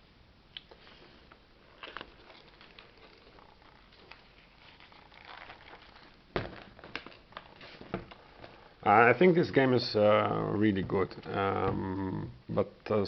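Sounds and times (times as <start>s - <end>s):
book pages turning: 1.3s - 8.7s.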